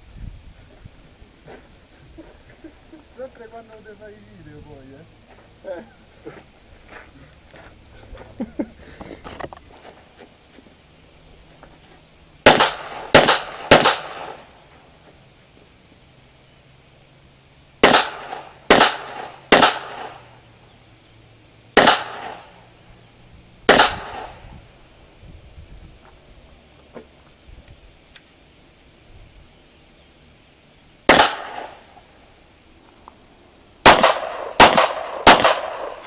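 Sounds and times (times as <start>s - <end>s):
pistol shots with echo: 12.5s - 14.4s, 17.8s - 20.2s, 21.8s - 22.5s, 23.7s - 24.4s, 31.1s - 31.8s, 33.8s - 36.0s.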